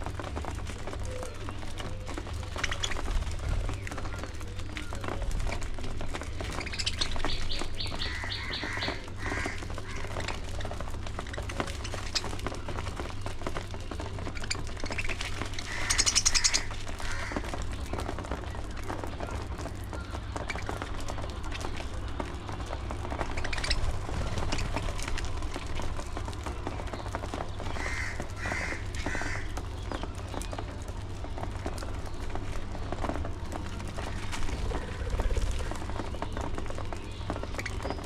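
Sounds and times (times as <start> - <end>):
budgerigars chirping: 6.5 - 10.1, 14.4 - 17.4, 23.4 - 24.7
rattling bird trills: 6.6 - 10.3, 14.4 - 17.4.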